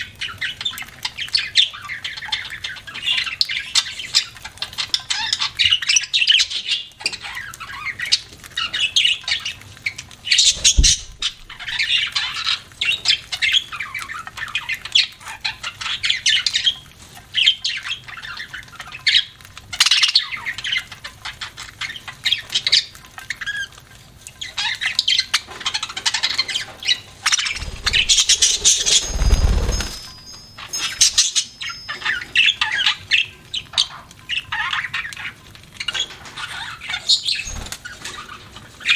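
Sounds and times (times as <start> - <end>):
budgerigars chattering: 10.2 - 16.8, 24.4 - 38.9
short low thud: 10.6 - 11.6.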